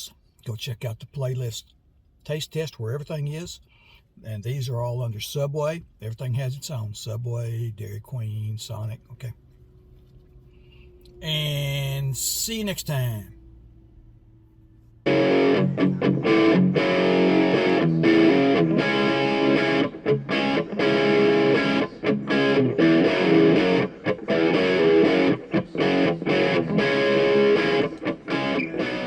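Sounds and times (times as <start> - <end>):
distorted electric guitar music: 15.0 - 29.0.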